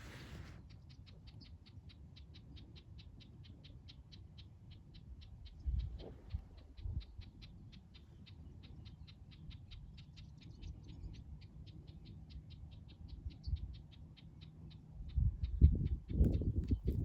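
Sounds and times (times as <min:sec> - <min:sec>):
faint low rumble: 0:00.0 - 0:00.6.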